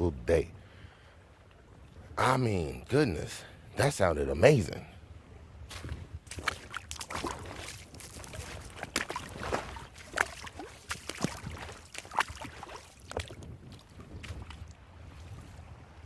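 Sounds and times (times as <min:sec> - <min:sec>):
plinks and small splashes: 0:05.7 - 0:15.6
creek water gurgling: 0:05.7 - 0:16.0.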